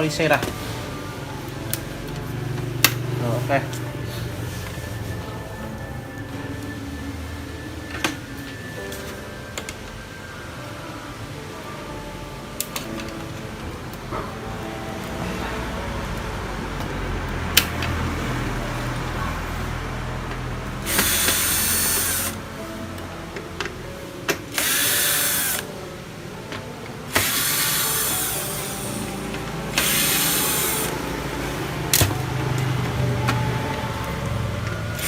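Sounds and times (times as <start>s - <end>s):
electric screwdriver running: 20.8s - 22.4s, 24.6s - 25.7s, 27.1s - 28.9s, 29.8s - 31.0s.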